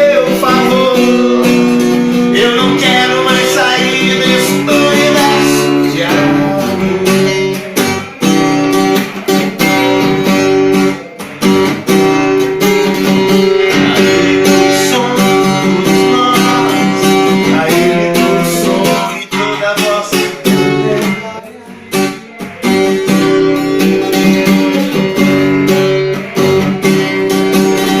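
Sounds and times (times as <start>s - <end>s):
acoustic guitar strumming: 0.0s - 28.0s.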